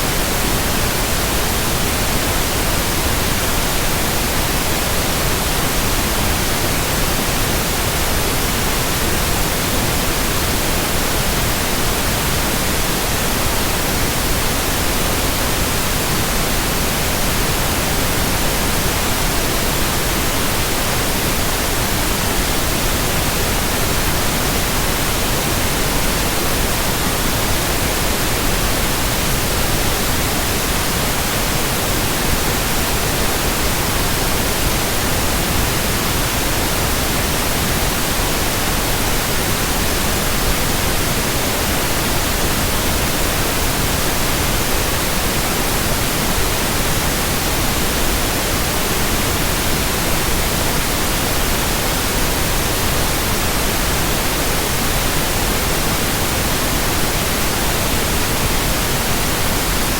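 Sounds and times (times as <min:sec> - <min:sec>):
white noise hiss: 0:00.0 - 0:59.9.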